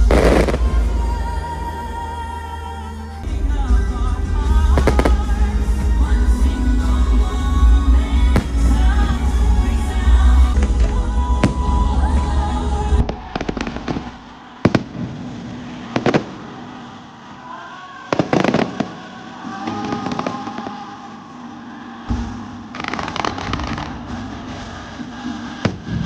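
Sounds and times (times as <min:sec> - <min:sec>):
fireworks bangs: 0:00.0 - 0:01.5, 0:03.4 - 0:12.4
music soundtrack: 0:00.0 - 0:26.0.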